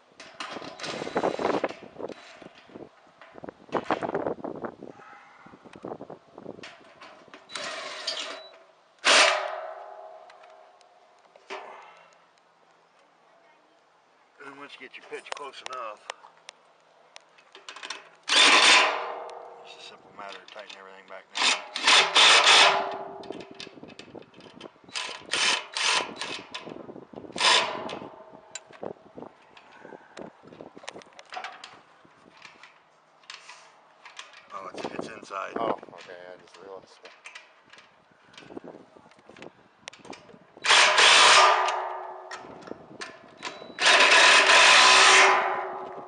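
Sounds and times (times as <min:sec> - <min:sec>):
power drill running: 0:18.3 - 0:18.8, 0:21.4 - 0:22.7, 0:27.4 - 0:27.8, 0:40.6 - 0:41.5, 0:43.8 - 0:45.3.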